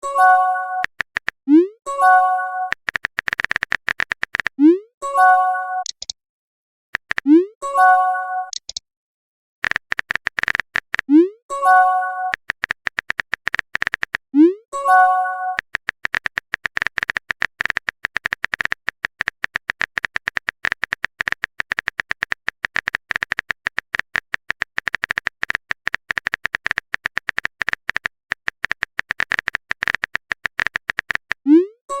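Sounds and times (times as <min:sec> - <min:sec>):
phone keyboard typing clicks: 0:00.3 - 0:01.5, 0:02.6 - 0:04.6, 0:05.8 - 0:06.2, 0:07.0 - 0:07.4, 0:08.5 - 0:08.8, 0:09.6 - 0:11.2, 0:11.8 - 0:14.3, 0:15.6 - 0:31.5.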